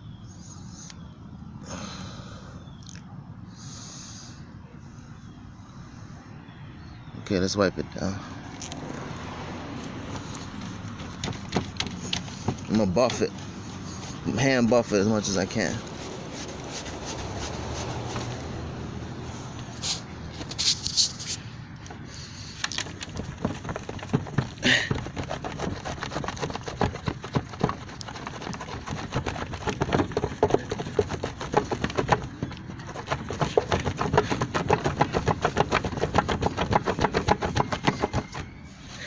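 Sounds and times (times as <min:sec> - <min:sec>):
hand rubbing strokes on plastic: 0:10.0 - 0:18.7, 0:19.3 - 0:38.6.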